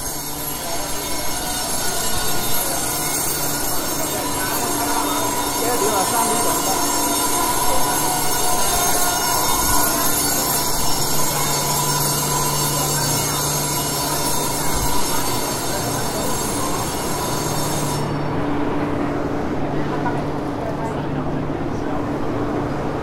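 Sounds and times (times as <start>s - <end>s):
high shrill squealing: 0.0s - 18.3s
train mechanical rumble: 0.0s - 23.0s.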